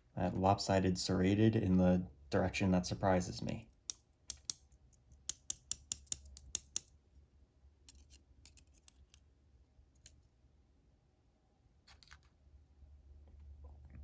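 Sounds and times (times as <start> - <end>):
small metal clicks of lock parts: 3.9 - 6.9, 7.9 - 9.2.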